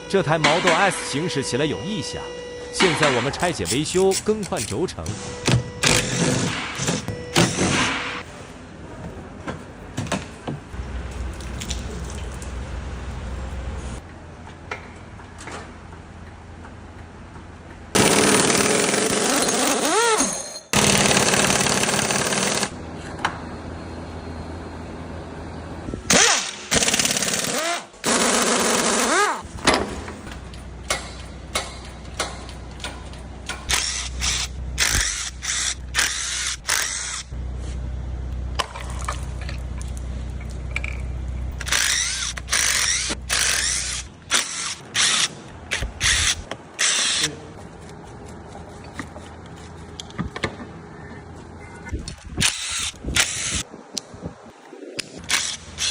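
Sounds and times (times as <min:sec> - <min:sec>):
hand tools clicking and knocking: 0:30.3 - 0:37.0.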